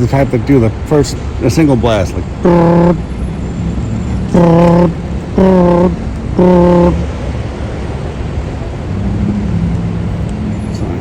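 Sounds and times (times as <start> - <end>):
traffic noise: 0.0 - 11.0
fire alarm horn blasts: 2.4 - 3.0, 4.3 - 7.0.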